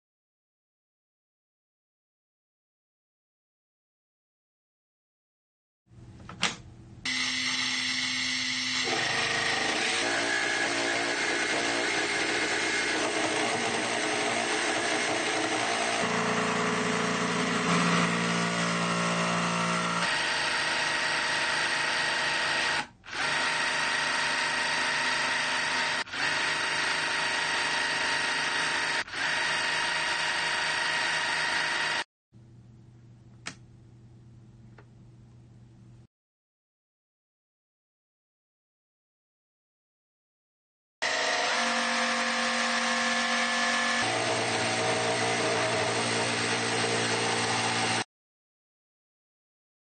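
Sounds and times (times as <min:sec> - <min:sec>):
jigsaw running: 0:07.1 - 0:32.1, 0:41.0 - 0:48.1.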